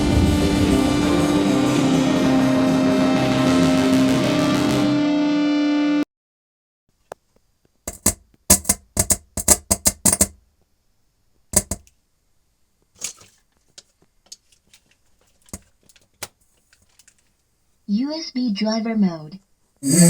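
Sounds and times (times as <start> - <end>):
guitar music: 0.0 - 6.0
sharp clicks and knocks: 7.9 - 10.4, 11.6 - 12.0.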